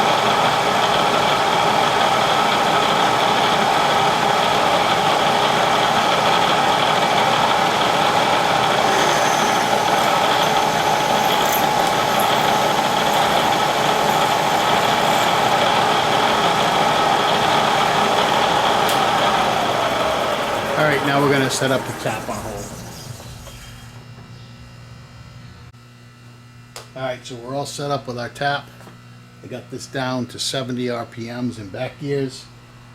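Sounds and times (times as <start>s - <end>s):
milling machine whine: 0.0s - 25.7s.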